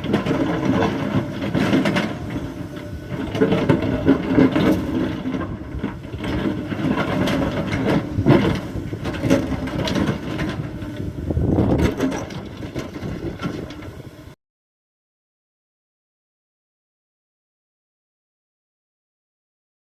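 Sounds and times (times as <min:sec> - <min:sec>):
excavator diesel engine running: 0:00.0 - 0:14.4.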